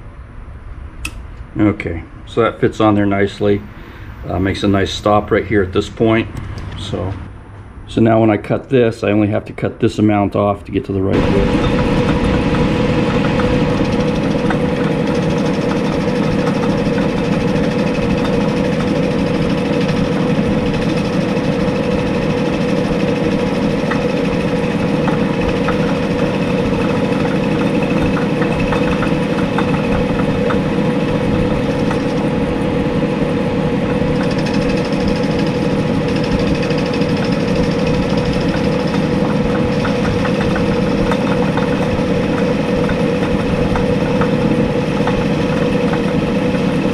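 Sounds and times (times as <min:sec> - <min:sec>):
metal lathe running: 0:11.1 - 0:46.9.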